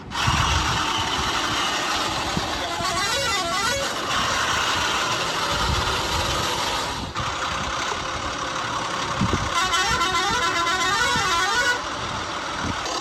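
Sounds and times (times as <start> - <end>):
vehicle engine running: 0.0 - 13.0.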